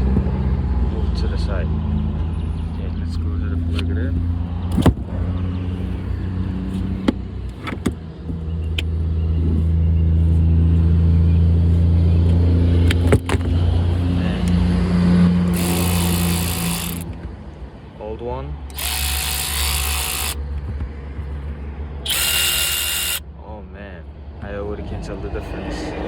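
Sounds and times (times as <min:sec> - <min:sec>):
low engine hum: 0:00.0 - 0:17.9
sharp clicks: 0:22.1 - 0:23.2.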